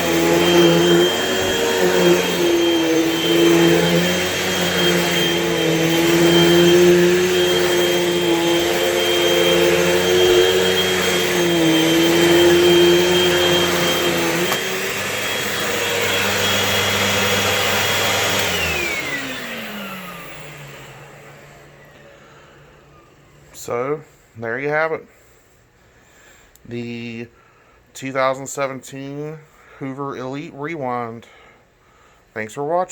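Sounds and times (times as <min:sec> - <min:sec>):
vacuum cleaner motor whine: 0:00.0 - 0:23.6.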